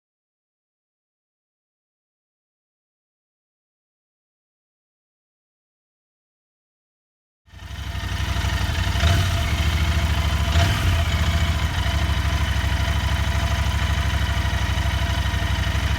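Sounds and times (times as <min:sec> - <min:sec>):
motorcycle engine idling: 0:07.5 - 0:15.9.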